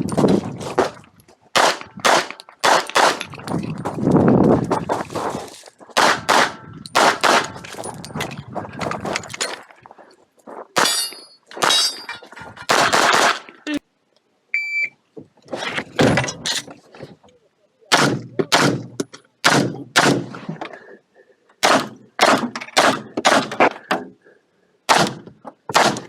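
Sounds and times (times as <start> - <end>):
pistol shots echoing: 1.6 - 3.2, 6.0 - 7.6
shot timer beep: 14.6 - 15.0.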